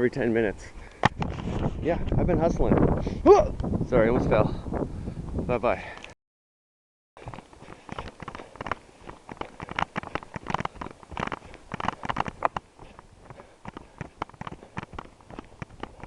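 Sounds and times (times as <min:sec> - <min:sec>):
camera rustling: 0:01.0 - 0:01.8, 0:07.2 - 0:16.0
footsteps scuffing on trail: 0:07.2 - 0:16.0.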